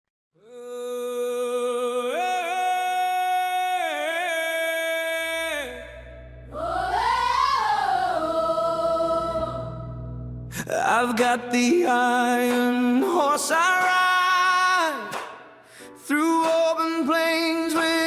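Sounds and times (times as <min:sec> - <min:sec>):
wordless chanting voice: 0:00.4 - 0:09.8, 0:10.5 - 0:15.2
choir-like voices: 0:05.4 - 0:10.0
low bass drone: 0:05.6 - 0:11.1.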